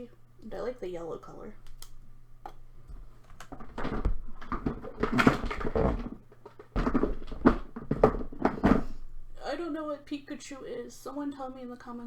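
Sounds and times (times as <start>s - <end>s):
rustling of packaging: 3.2s - 9.0s.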